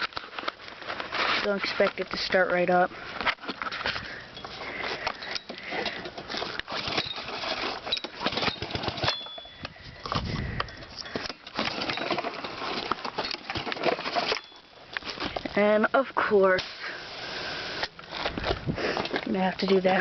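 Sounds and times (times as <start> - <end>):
recoil starter being pulled: 3.2 - 15.5
engine turning over: 5.0 - 9.3.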